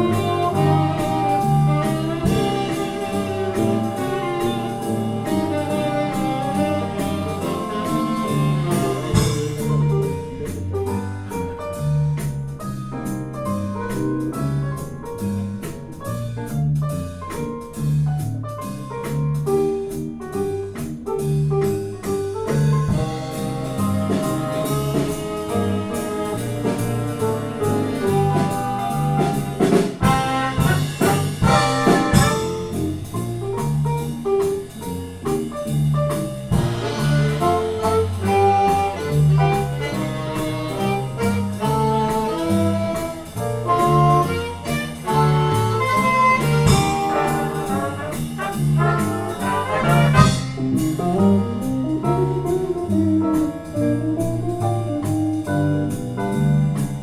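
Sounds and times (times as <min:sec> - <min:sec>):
horn melody: 0:00.0 - 0:11.7, 0:22.9 - 0:33.1, 0:36.5 - 0:55.4
live jazz band playing: 0:00.0 - 0:57.0.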